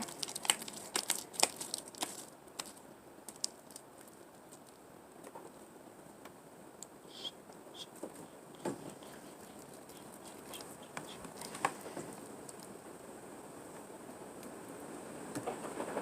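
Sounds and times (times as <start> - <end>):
slime clicking and crackling: 0.0 - 4.8, 9.0 - 11.7.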